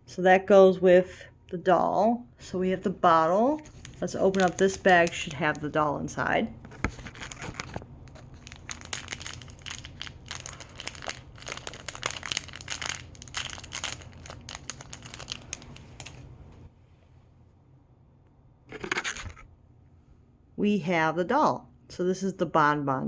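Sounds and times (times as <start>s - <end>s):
plastic bag crinkling and tearing: 3.6s - 5.7s, 6.8s - 16.3s, 18.7s - 19.4s.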